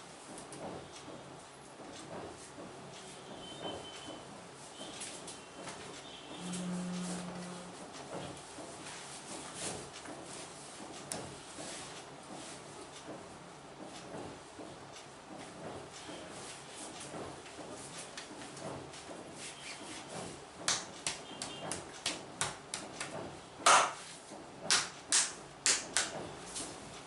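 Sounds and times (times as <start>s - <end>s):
hands rubbing and patting: 19.4s - 26.8s.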